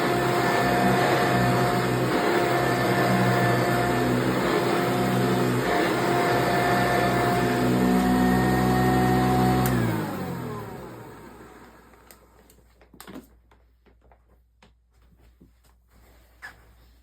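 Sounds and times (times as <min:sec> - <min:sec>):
vacuum cleaner running: 0:00.0 - 0:12.5
motor winding down: 0:00.1 - 0:11.8.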